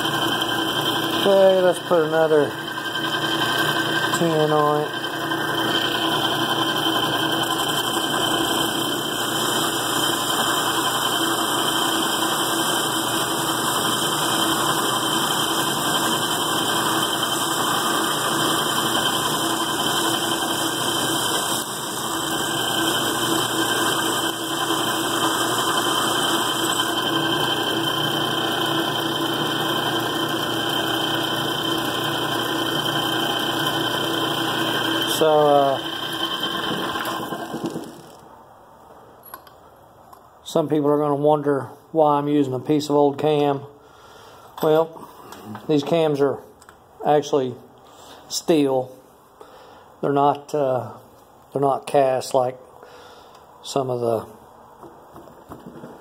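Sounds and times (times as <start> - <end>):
metal lathe cutting steel: 0.0 - 38.2.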